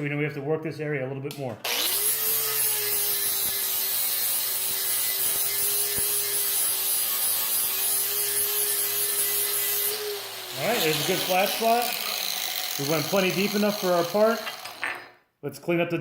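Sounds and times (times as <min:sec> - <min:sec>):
electric grinder grinding metal: 0:01.7 - 0:15.1.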